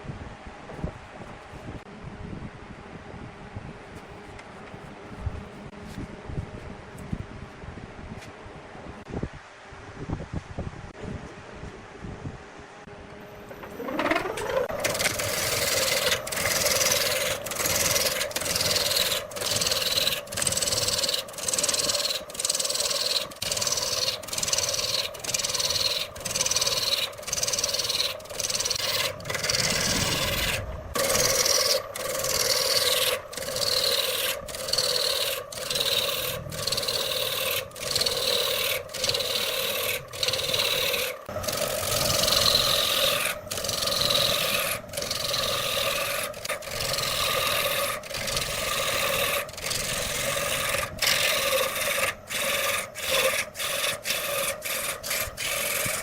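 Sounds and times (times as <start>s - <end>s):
steady lathe hum: 12.9s - 56.0s
lathe tool scraping wood: 13.4s - 56.0s.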